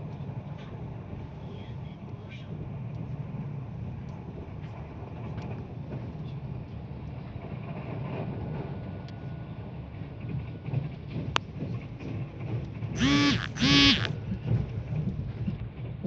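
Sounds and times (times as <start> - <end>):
train interior rumble: 0.0 - 12.9.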